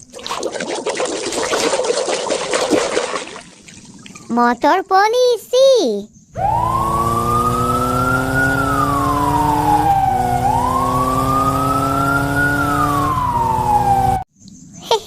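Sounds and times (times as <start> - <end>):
steady engine drone: 6.4 - 14.2
police siren wailing: 6.4 - 14.3.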